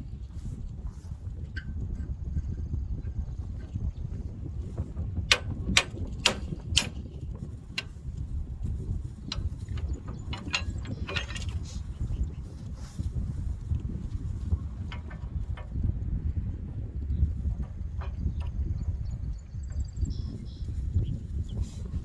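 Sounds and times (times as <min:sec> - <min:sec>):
wrench metal clicks: 0:05.3 - 0:07.1, 0:09.3 - 0:11.6.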